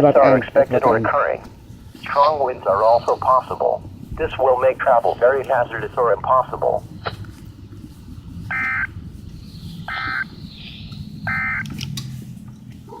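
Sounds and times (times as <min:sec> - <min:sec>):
digital data tone bursts: 0:08.5 - 0:09.0, 0:09.8 - 0:11.7.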